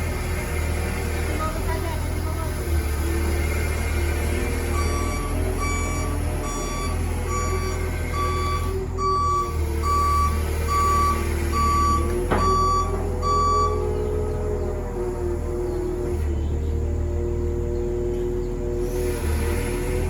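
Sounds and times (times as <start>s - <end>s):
diesel engine rumble: 0.0s - 20.0s
backup alarm beeping: 4.8s - 13.9s.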